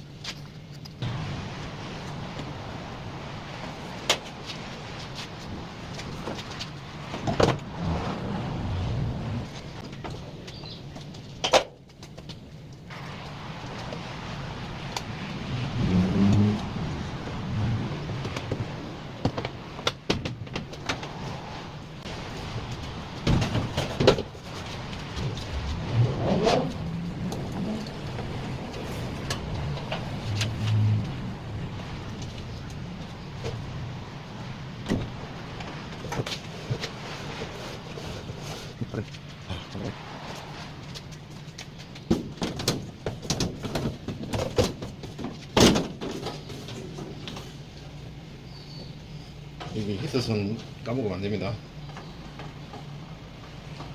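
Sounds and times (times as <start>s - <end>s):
knocks and clatter of parts: 22.7s - 25.5s, 40.8s - 47.6s.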